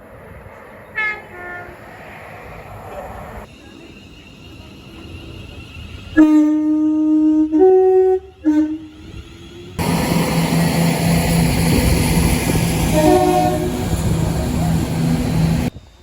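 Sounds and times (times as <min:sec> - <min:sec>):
train passing with rumble: 0:00.0 - 0:16.0
train horn blasts: 0:06.2 - 0:08.9, 0:12.8 - 0:14.1.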